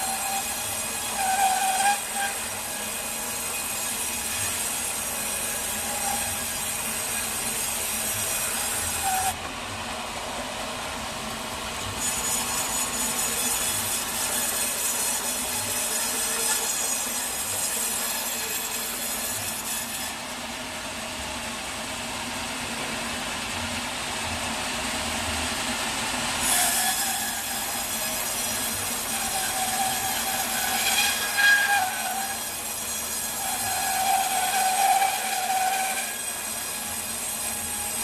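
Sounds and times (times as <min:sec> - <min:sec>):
band saw high squeal: 0:00.0 - 0:03.0, 0:05.8 - 0:09.4, 0:26.4 - 0:36.8
band saw cutting log: 0:00.0 - 0:38.0.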